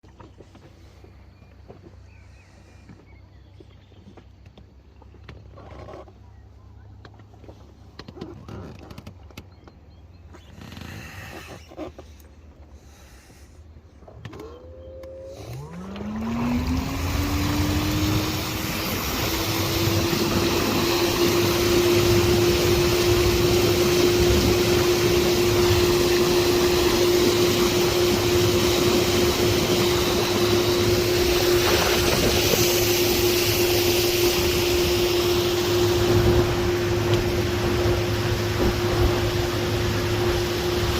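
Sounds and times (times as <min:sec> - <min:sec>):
electric outboard motor whine: 0:14.2 - 0:40.9
water rushing: 0:15.6 - 0:40.9.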